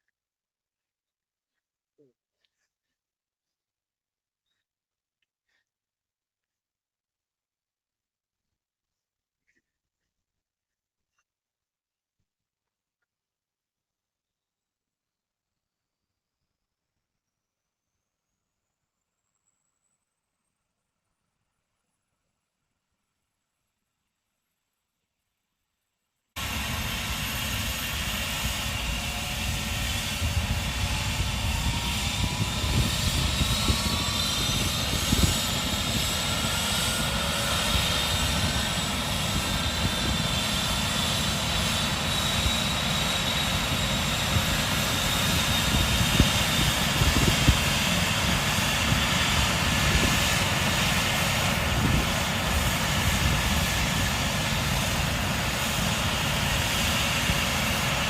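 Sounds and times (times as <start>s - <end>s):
helicopter turbine whine: 26.4s - 58.0s
wind noise on microphone: 26.5s - 58.0s.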